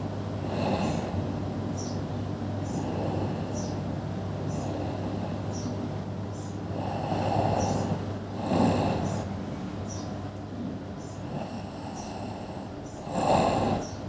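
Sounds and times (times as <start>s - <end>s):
steady low hum: 0.0s - 14.0s
person snoring: 0.4s - 1.2s, 6.7s - 9.3s, 11.2s - 14.0s.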